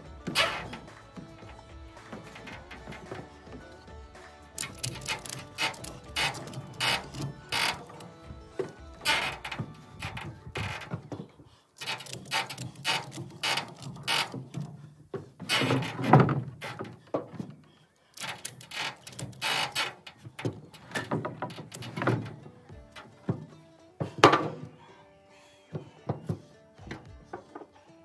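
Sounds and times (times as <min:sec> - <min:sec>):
mechanical clattering: 0:04.6 - 0:08.0.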